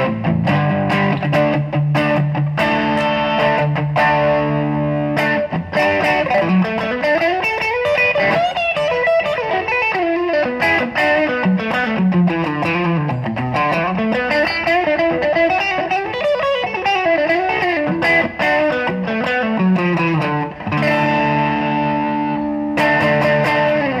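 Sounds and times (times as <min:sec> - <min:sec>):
distorted electric guitar lead: 0:00.0 - 0:24.0
ringing guitar chord: 0:17.4 - 0:24.0.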